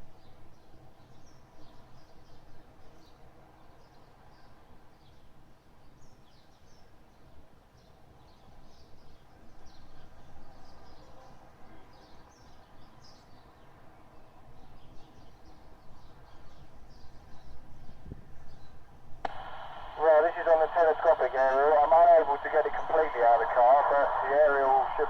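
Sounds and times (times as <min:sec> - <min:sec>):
low outdoor rumble: 0:19.2 - 0:25.0.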